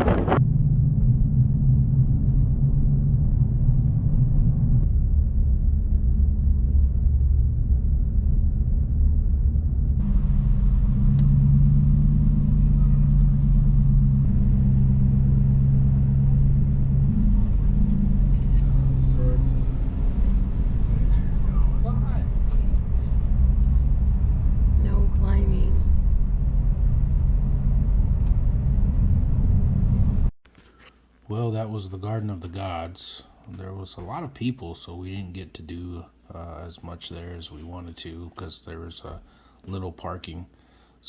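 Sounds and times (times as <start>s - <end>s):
vehicle engine and road noise: 0.0s - 30.3s.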